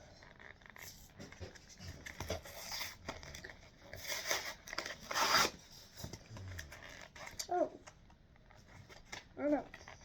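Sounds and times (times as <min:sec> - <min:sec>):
packaging tearing and crinkling: 0:04.0 - 0:05.6.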